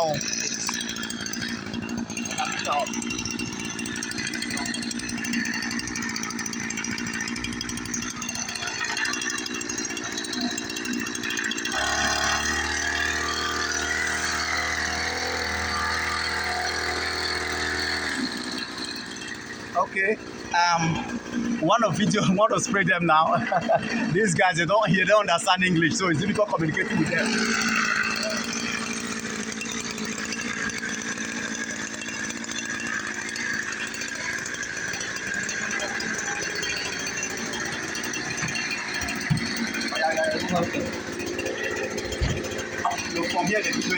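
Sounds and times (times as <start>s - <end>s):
backpack sprayer engine running: 0.0s - 43.9s.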